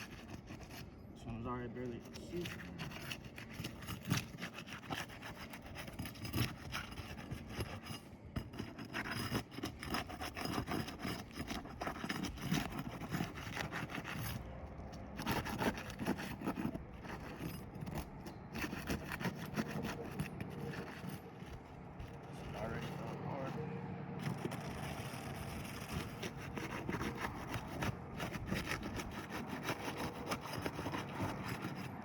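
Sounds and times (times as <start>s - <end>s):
roof shingles scraping: 24.2s - 32.0s.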